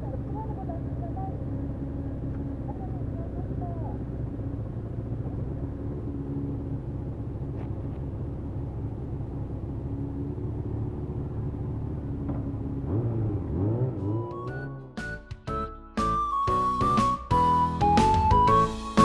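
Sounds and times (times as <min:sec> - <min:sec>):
vehicle engine running: 0:00.0 - 0:15.1.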